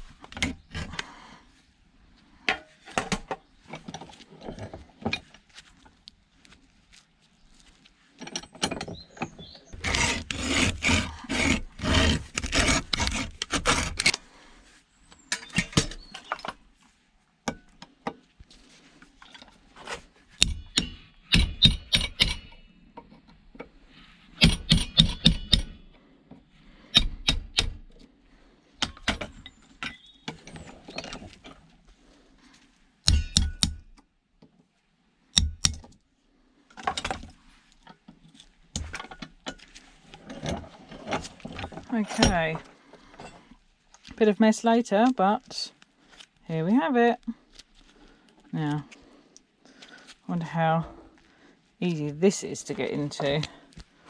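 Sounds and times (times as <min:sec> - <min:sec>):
hand saw cutting metal: 0:09.8 - 0:14.2, 0:24.4 - 0:25.8.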